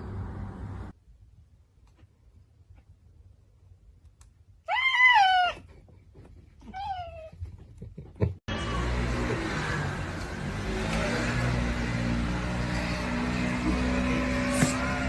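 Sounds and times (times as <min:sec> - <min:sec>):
cat meowing: 0:04.7 - 0:05.6, 0:06.6 - 0:07.3.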